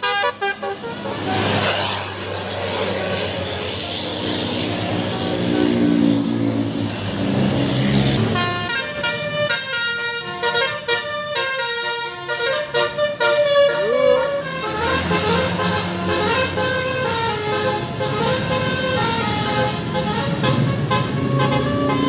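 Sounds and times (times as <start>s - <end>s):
multi-tone bus horn playing a tune: 0.0s - 1.8s, 8.2s - 22.0s
bus engine running: 0.0s - 22.0s.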